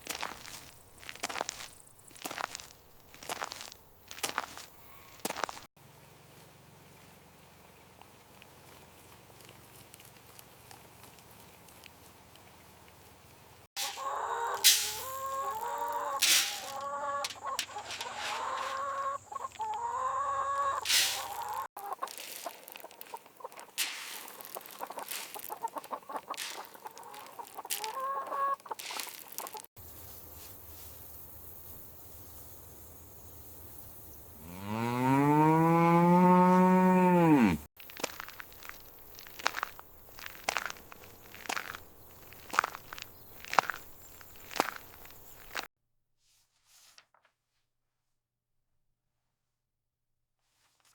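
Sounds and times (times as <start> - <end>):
chickens clucking: 13.8 - 23.8, 24.4 - 29.7.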